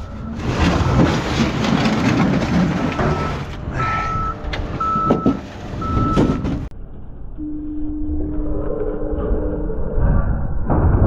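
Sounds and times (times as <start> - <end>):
heavy machinery running: 0.0 - 7.5
vehicle back-up alarm beeping: 2.9 - 6.7.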